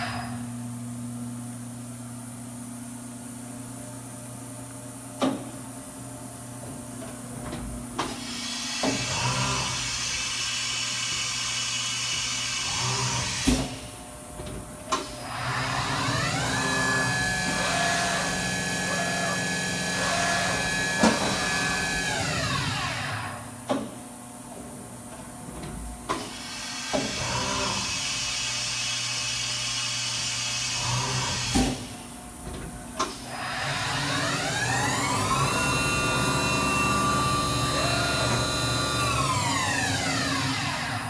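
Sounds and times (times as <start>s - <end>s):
machine spindle whining: 15.2s - 23.4s, 33.3s - 41.0s.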